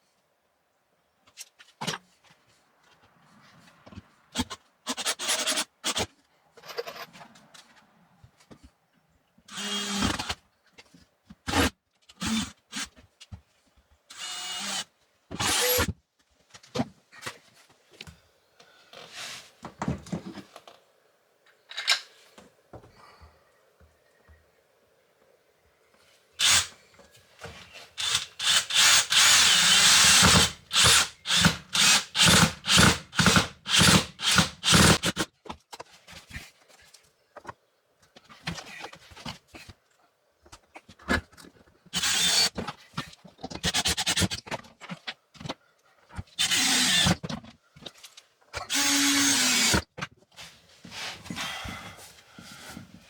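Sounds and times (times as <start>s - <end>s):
power drill running: 9.5s - 10.2s, 14.1s - 14.8s, 15.4s - 15.9s, 26.4s - 26.7s, 28.0s - 35.0s, 42.0s - 42.5s, 46.4s - 47.2s, 48.7s - 49.8s.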